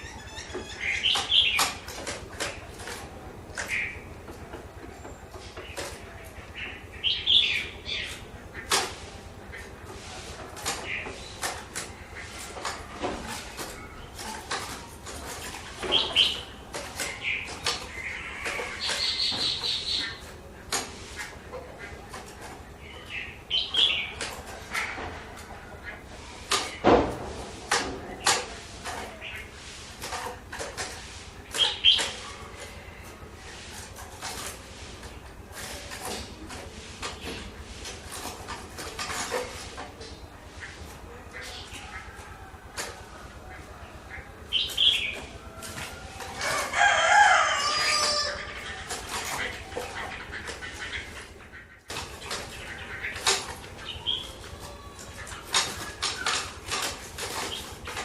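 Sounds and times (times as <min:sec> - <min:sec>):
bird chirping calls: 0:00.0 - 0:26.9, 0:27.6 - 0:58.0
rooster crowing: 0:45.4 - 0:48.6.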